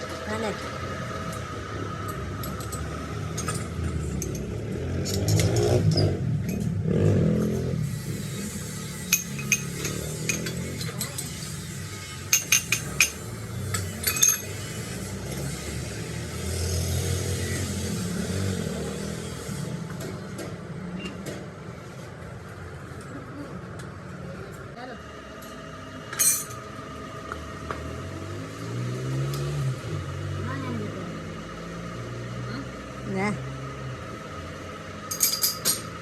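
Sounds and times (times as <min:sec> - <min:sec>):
metal pieces clinking: 0:14.0 - 0:14.6, 0:35.1 - 0:35.9.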